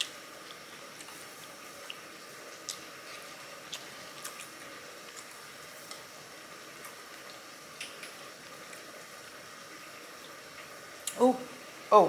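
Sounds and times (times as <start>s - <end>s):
person chewing food: 0.0s - 6.1s.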